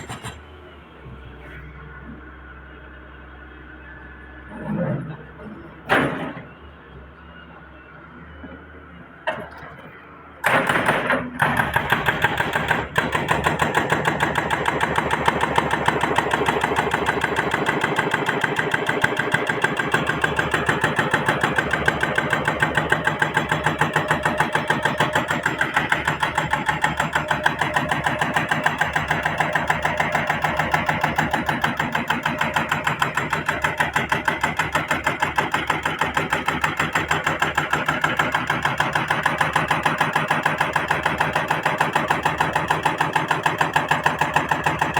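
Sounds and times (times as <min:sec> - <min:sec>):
excavator diesel engine running: 0:00.0 - 0:44.9.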